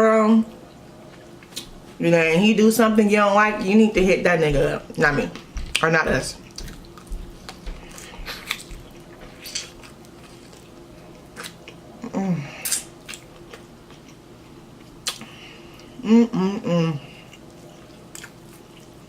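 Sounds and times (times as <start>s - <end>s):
chewing with wet mouth clicks: 6.4s - 10.7s, 11.3s - 11.8s, 12.6s - 15.9s, 17.3s - 19.0s
person humming: 15.9s - 17.3s.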